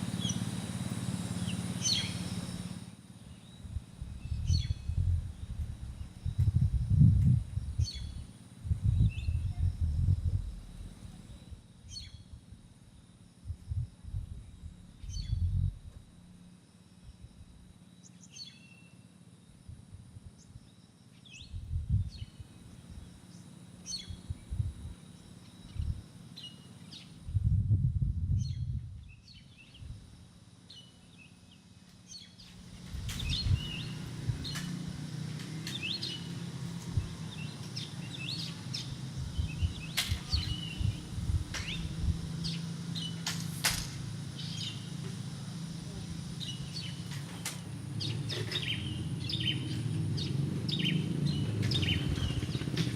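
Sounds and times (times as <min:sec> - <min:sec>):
small birds chirping: 0:00.0 - 0:12.4, 0:13.7 - 0:15.8, 0:16.4 - 0:19.2, 0:20.4 - 0:27.2, 0:28.4 - 0:43.4, 0:44.3 - 0:52.9
low rumble: 0:03.6 - 0:12.7, 0:13.4 - 0:16.2, 0:21.4 - 0:23.1, 0:27.2 - 0:29.2.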